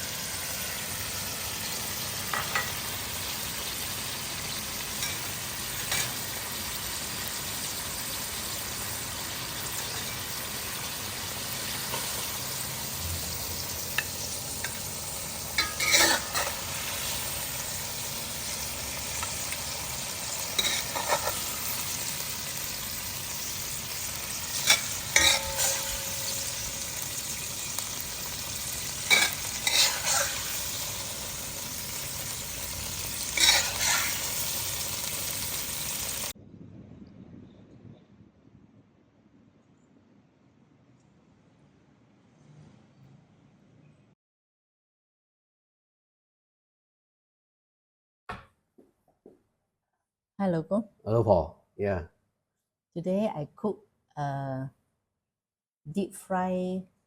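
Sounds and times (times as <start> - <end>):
food sizzling in hot oil: 0.0 - 36.4
spatula scraping a pan: 4.8 - 6.4, 15.5 - 35.1.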